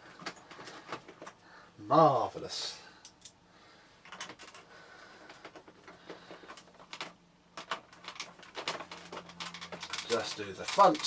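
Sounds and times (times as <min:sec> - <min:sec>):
plastic parts clicking and scraping: 0:00.0 - 0:01.4, 0:04.0 - 0:11.0.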